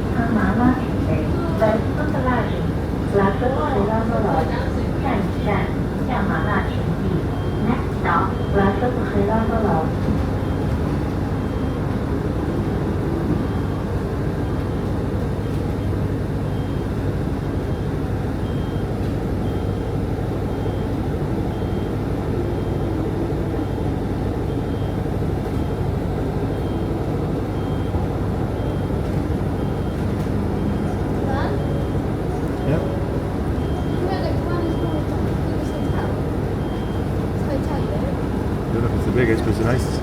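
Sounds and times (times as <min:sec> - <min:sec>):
bus engine rumble: 0:00.0 - 0:40.0.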